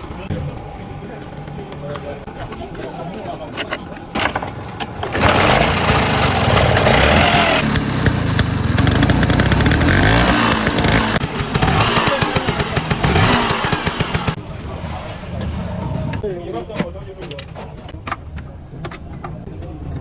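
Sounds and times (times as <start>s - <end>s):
scooter engine revving: 4.0s - 16.2s.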